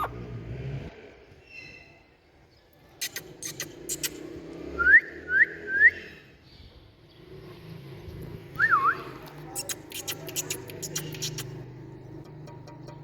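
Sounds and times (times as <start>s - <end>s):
sharp clicks: 3.0s - 4.2s, 9.2s - 13.0s.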